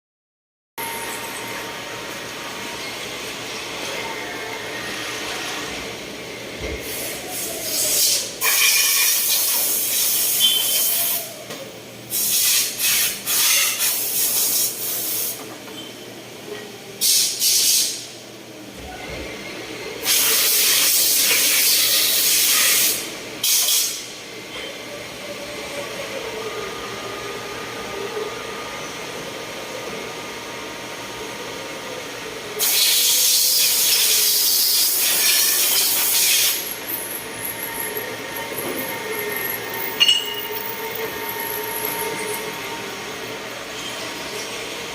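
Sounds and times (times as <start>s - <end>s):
steady machine hum: 0.8s - 7.3s, 34.4s - 44.9s.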